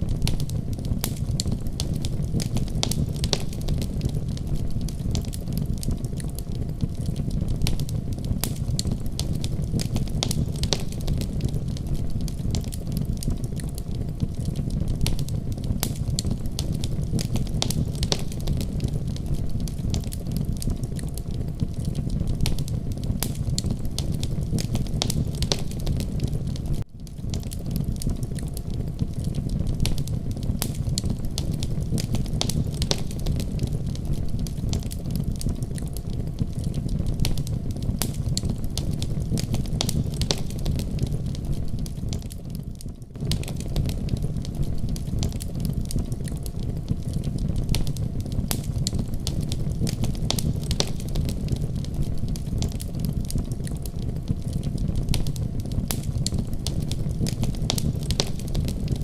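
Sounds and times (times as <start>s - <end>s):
logs crackling and popping: 0.0s - 59.0s
low rumble of fire: 0.0s - 59.0s.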